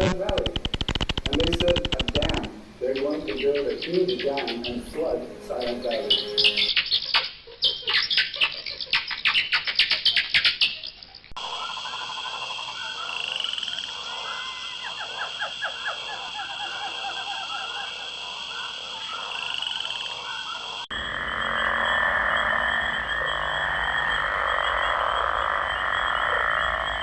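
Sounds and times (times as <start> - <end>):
frogs calling in pulsed trains: 0.3 - 27.0
steady high trill: 4.3 - 6.7.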